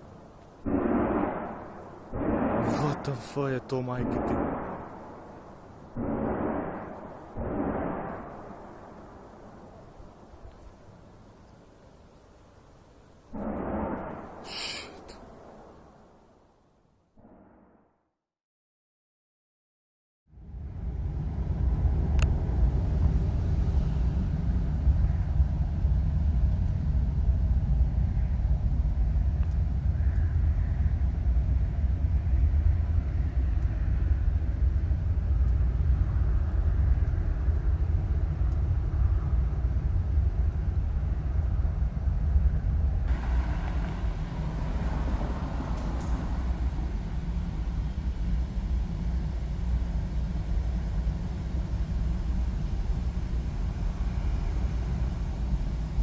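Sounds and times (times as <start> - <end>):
low rumbling drone: 0.0 - 10.6, 13.2 - 16.3, 20.3 - 56.0
rougher higher rumble layer: 0.0 - 11.4, 20.3 - 56.0.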